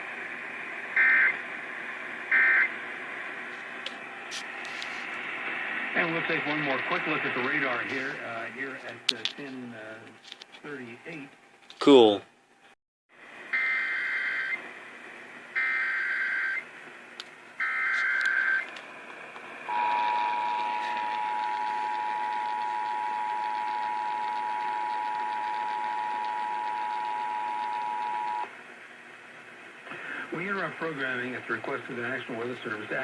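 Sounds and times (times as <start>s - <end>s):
data tone bursts: 19.7s - 28.5s.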